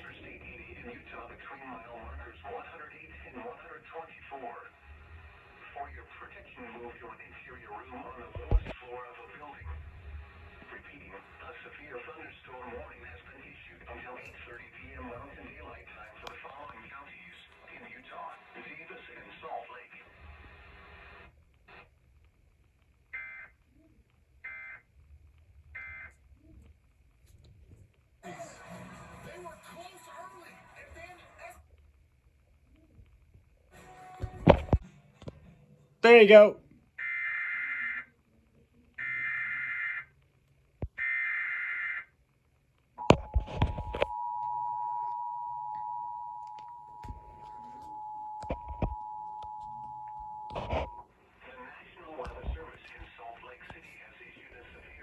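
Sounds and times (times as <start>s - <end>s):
crackling clicks: 21.4s - 24.2s.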